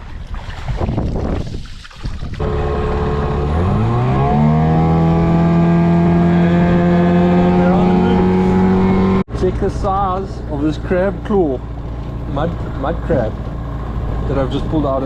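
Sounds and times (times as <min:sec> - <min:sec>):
windy handling noise: 0:00.0 - 0:03.6, 0:11.1 - 0:15.0
engine revving and running: 0:02.4 - 0:15.0.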